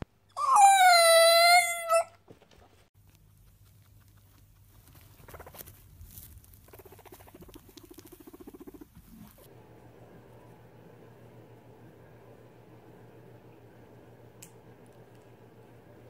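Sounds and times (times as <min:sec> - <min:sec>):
small animal rapid pulsing: 0:02.3 - 0:09.5.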